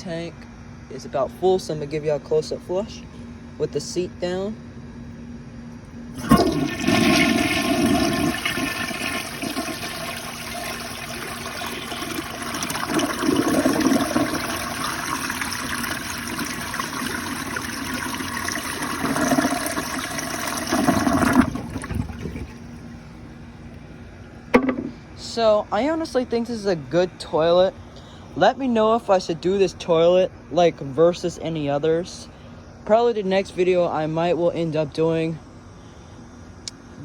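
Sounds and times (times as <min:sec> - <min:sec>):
toilet flushing: 0:06.2 - 0:22.8.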